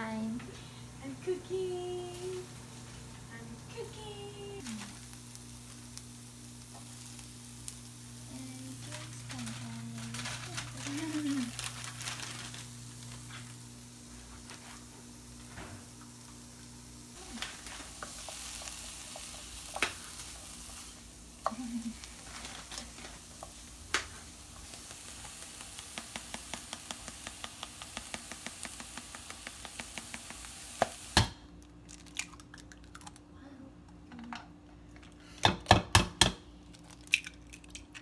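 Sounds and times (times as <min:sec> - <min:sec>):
food sizzling in a pan: 0:00.0 - 0:31.3.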